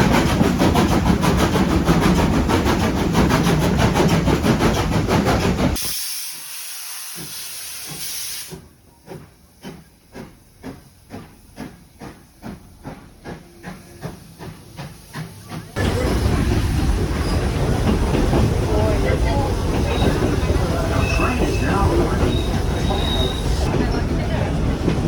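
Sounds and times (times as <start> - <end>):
steam locomotive chuffing: 0.0 - 25.0
hiss of steam: 5.8 - 8.6.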